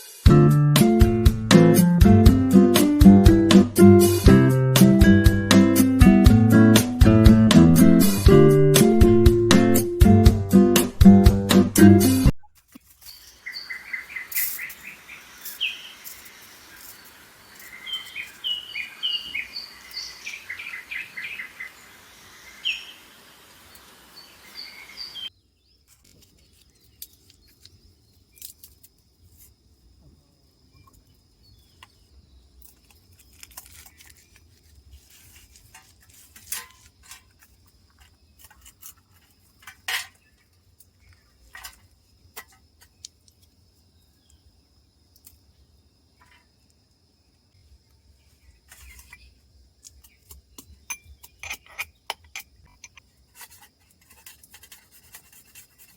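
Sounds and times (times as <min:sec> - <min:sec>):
small birds chirping: 0:12.9 - 0:29.5, 0:30.6 - 0:35.7, 0:37.5 - 0:46.7, 0:47.3 - 0:54.1
faint high insect buzz: 0:13.1 - 0:25.4, 0:26.0 - 0:50.5.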